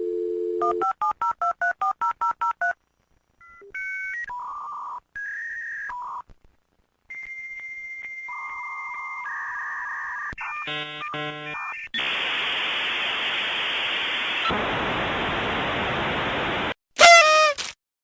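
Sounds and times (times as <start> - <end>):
hissy modem handshake tones: 17.0 - 17.7.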